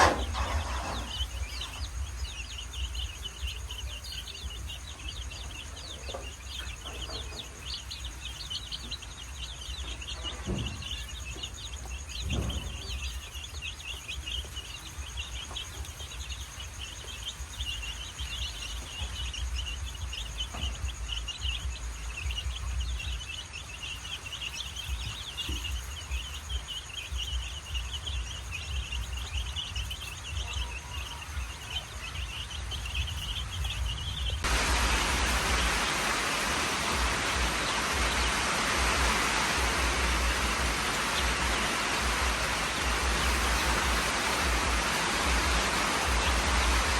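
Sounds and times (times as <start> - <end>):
chicks peeping: 0.0 - 46.9
steady low rumble: 32.6 - 46.9.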